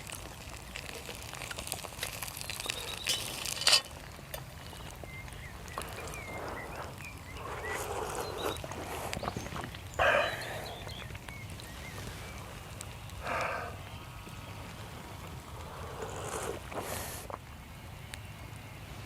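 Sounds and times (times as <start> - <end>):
campfire crackling and popping: 0.0 - 19.0
faint bird chirps: 4.6 - 14.7.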